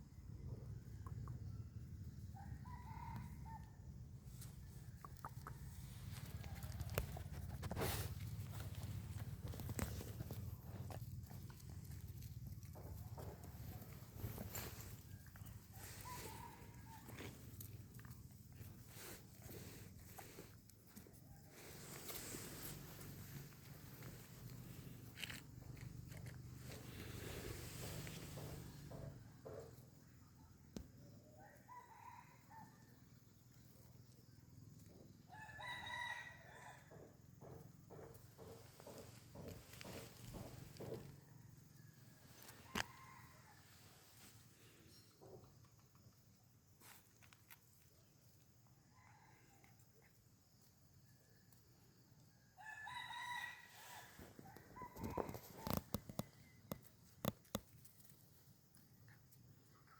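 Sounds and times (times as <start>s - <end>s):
rooster crowing: 2.3s - 3.8s, 14.0s - 17.3s, 35.3s - 37.1s, 52.5s - 55.9s.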